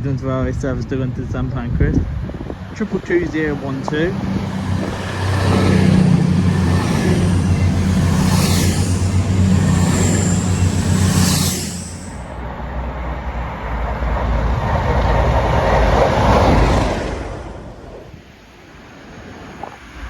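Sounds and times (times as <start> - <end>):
diesel train engine drone: 0.0 - 18.2
rush of air and rail noise: 0.0 - 20.0
high whine: 2.0 - 12.8.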